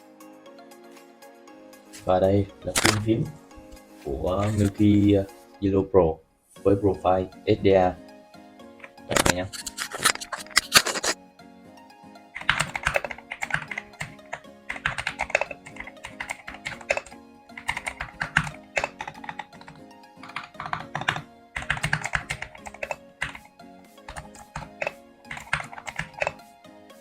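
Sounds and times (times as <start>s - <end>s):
background music: 0.0s - 27.0s
rapid keyboard typing: 12.4s - 26.4s.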